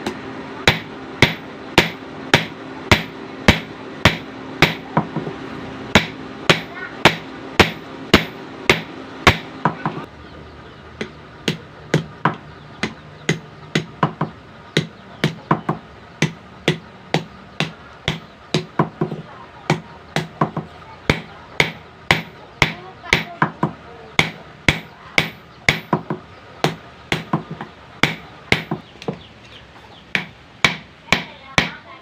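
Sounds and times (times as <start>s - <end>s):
hammer striking steel on anvil: 0.0s - 5.3s, 5.9s - 10.1s, 24.2s - 28.8s
steady hum: 0.0s - 32.0s.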